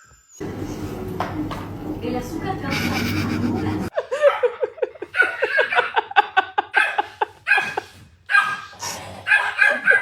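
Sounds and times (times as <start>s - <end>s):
dog yipping: 8.3s - 8.7s, 9.3s - 10.0s.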